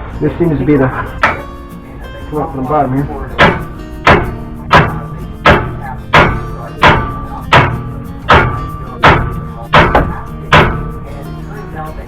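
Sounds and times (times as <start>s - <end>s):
hammer pounding on steel: 1.2s - 1.5s, 3.3s - 11.2s.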